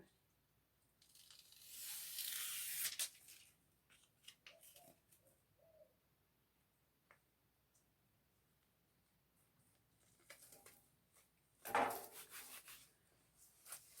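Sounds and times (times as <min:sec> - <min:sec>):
tape tearing and peeling: 0:01.0 - 0:03.5
light crinkles and ticks: 0:03.3 - 0:05.4, 0:09.6 - 0:11.4.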